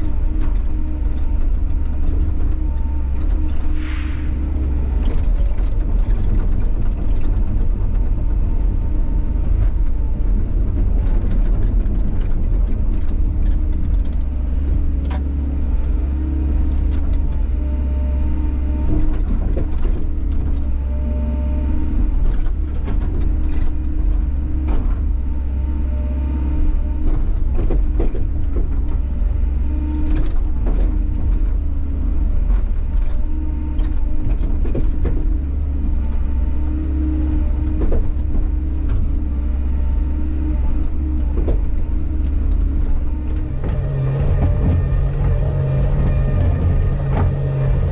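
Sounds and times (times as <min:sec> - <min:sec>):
diesel engine running under load: 0:00.0 - 0:47.9
hydraulic whine: 0:43.1 - 0:47.9.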